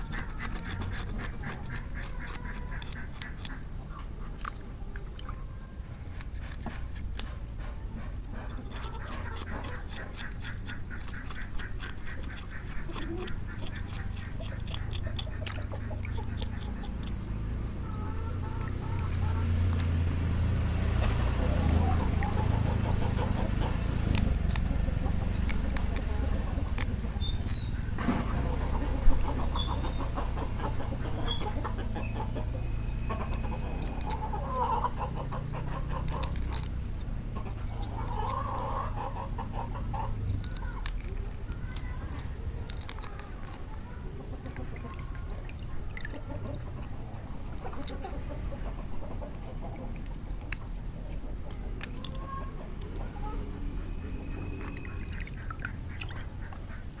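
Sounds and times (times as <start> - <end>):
poultry calling: 0.0 - 4.4, 8.4 - 20.0, 20.8 - 36.7, 37.3 - 49.9
sharp clicks: 23.4 - 34.3.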